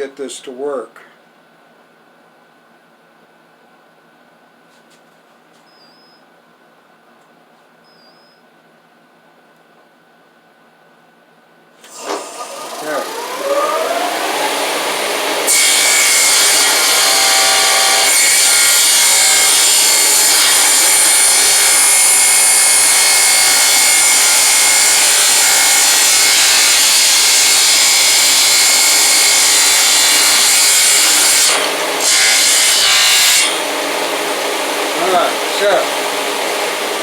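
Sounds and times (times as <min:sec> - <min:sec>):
power tool cutting wood: 0:11.8 - 0:37.0.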